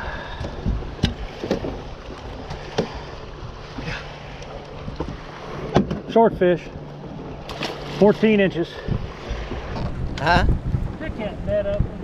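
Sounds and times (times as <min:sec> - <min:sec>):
wind on microphone: 0:00.0 - 0:04.0, 0:08.8 - 0:12.0
boat engine low hum: 0:00.0 - 0:12.0
knocks and taps on boat: 0:00.3 - 0:06.6, 0:08.9 - 0:11.0, 0:11.6 - 0:12.0.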